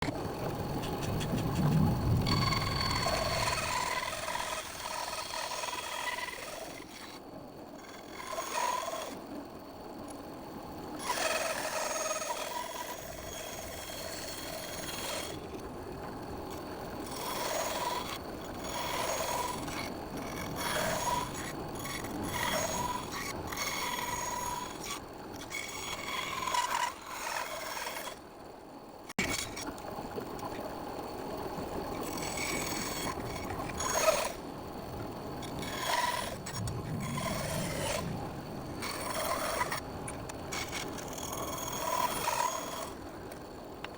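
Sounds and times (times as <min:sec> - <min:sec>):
saw rasping through wood: 0:02.3 - 0:07.2, 0:07.8 - 0:09.2, 0:11.0 - 0:15.4, 0:17.0 - 0:28.2, 0:35.4 - 0:38.1, 0:38.8 - 0:39.8.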